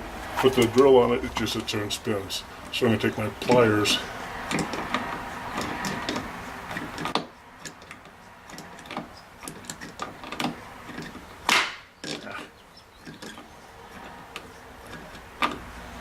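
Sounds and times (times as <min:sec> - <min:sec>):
pliers clicking and scraping on screw: 0:04.4 - 0:11.3.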